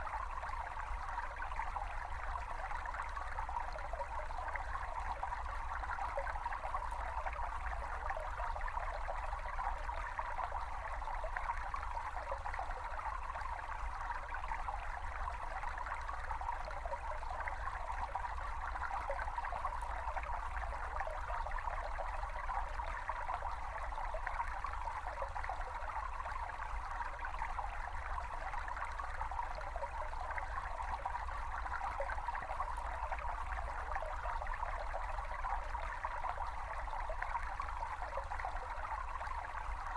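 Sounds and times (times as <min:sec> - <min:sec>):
brook babbling over stones: 0:00.0 - 0:39.9.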